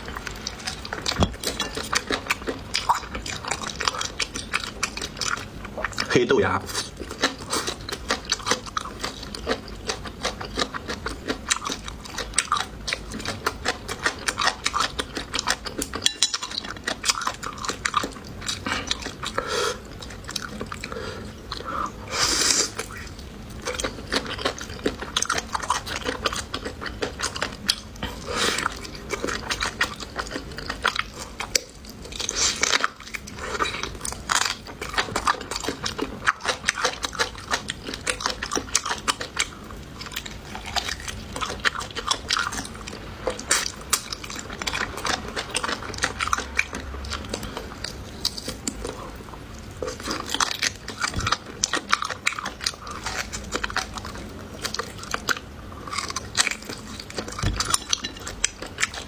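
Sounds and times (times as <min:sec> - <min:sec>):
chewing and crunching food: 0:00.0 - 0:59.0.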